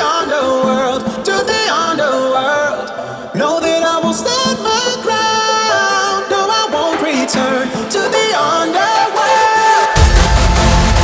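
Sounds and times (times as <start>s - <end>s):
hardstyle music: 4.0s - 11.0s.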